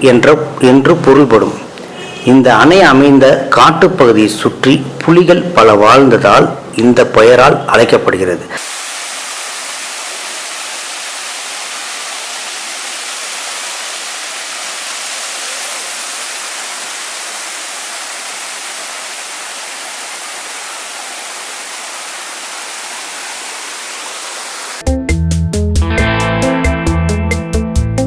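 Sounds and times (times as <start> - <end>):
waterfall rushing: 8.6 - 24.8.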